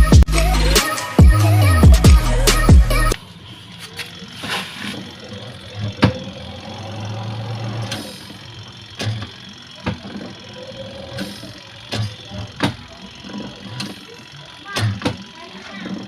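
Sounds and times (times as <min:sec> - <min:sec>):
sharp clicks and knocks: 0:09.0 - 0:10.4, 0:11.9 - 0:16.0.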